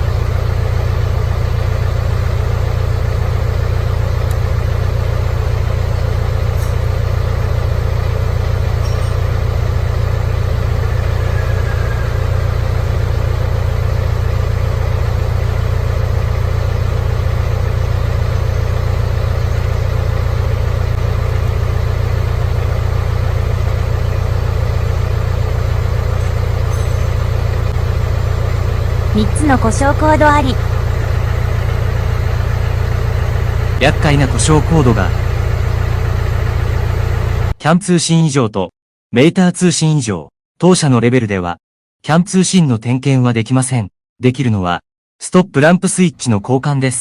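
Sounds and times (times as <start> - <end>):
diesel truck engine idling: 0.0 - 37.6.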